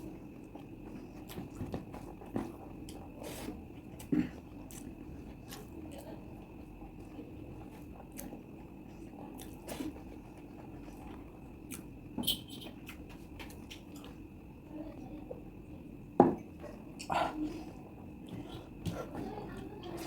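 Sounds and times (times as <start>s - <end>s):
person chewing: 2.8s - 6.0s, 9.0s - 11.9s.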